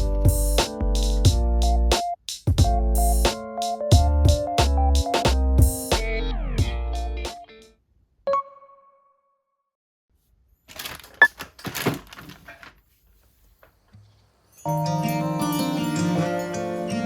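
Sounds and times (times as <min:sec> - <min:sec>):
background music: 0:00.0 - 0:07.5, 0:14.7 - 0:17.0.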